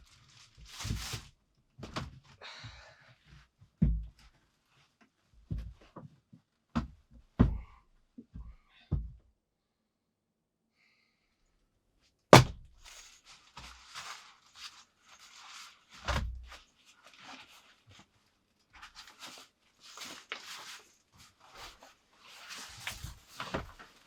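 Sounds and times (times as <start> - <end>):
objects scraping and rustling: 0.0 - 1.3, 12.8 - 18.2, 18.8 - 24.0
sharp knock: 12.4 - 12.7
heavy dull thud: 12.4 - 12.8.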